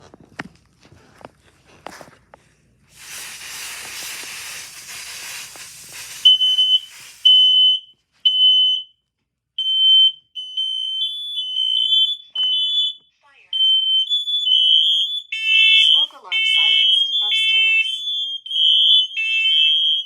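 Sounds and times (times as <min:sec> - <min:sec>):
steady hiss: 0:02.9 - 0:07.5
smoke alarm beeping: 0:03.0 - 0:09.0, 0:09.6 - 0:20.0
second higher-pitched alarm: 0:06.2 - 0:08.8, 0:09.6 - 0:20.0.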